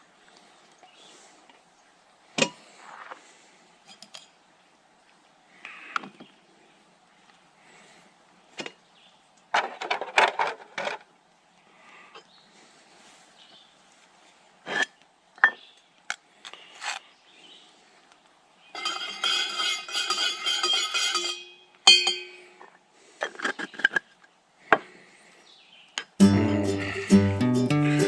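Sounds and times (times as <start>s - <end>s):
metallic clattering and rattling: 18.8s - 21.4s
metal clank with ring: 18.8s - 22.4s
camping gear knocks and clinks: 18.8s - 22.5s.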